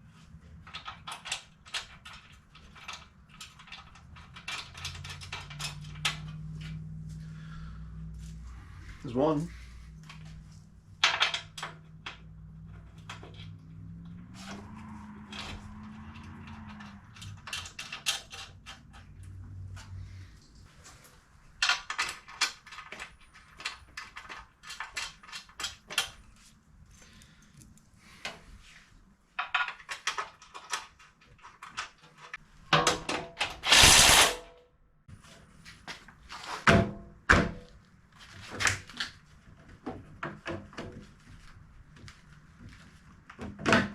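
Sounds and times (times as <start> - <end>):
metal nuts and bolts rattling: 0.6 - 6.8, 10.0 - 20.7
loud noisy burst: 33.6 - 34.4.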